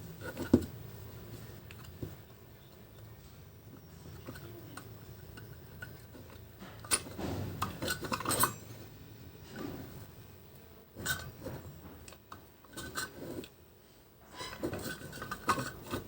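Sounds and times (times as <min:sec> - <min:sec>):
metal parts clinking: 0:03.9 - 0:09.6.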